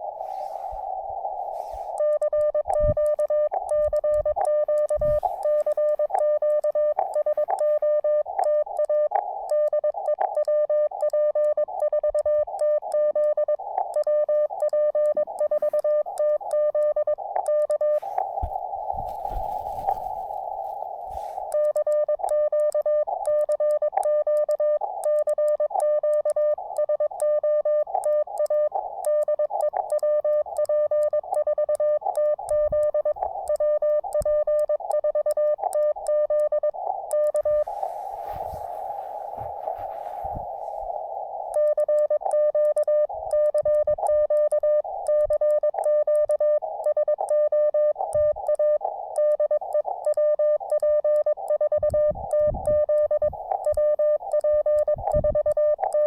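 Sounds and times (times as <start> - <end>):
radio receiver hiss: 0.0 - 3.7, 4.4 - 6.3, 17.2 - 21.6, 36.8 - 41.7
morse code sidetone beeps: 0.0 - 56.0.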